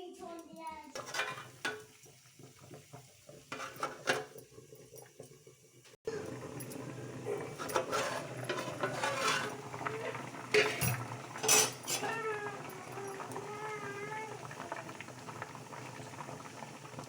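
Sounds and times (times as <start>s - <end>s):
utensil scraping a pan: 0.9s - 1.8s, 3.5s - 4.3s, 7.3s - 12.2s.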